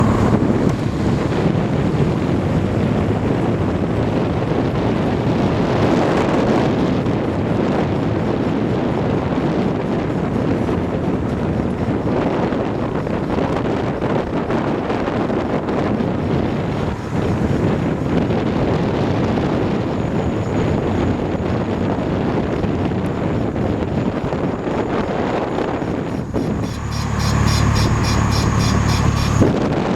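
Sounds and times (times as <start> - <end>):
wheel noise: 0.0 - 5.1, 16.1 - 29.7
vehicle running noise: 0.0 - 29.9.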